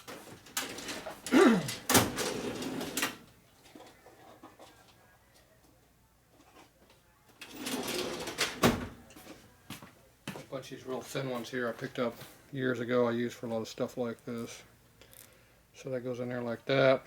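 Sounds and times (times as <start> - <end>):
drawers sliding open and shut: 0.0 - 3.3, 7.4 - 9.0.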